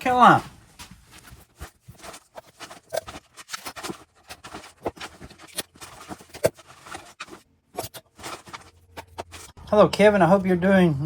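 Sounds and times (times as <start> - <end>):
package crinkling and tearing: 1.2 - 9.5.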